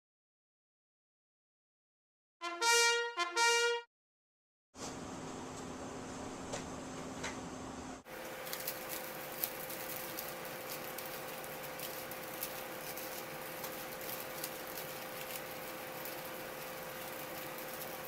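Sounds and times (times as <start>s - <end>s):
room hum: 4.8s - 18.0s.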